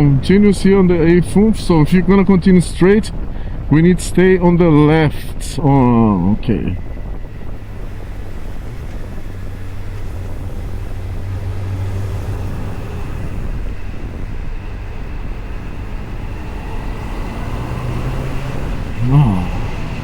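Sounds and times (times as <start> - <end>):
road and wind noise: 0.0 - 20.0
motorcycle engine running: 5.8 - 20.0.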